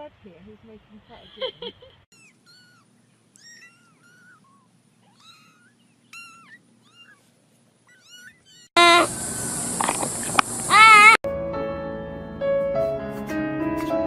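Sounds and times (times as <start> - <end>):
kitten mewing: 2.1 - 9.1, 10.7 - 11.2.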